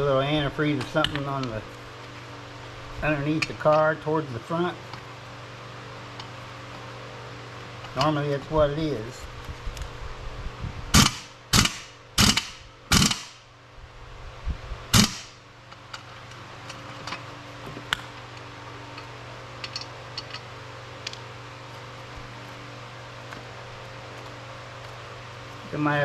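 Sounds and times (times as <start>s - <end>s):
metal-on-metal strikes: 14.9s - 15.4s.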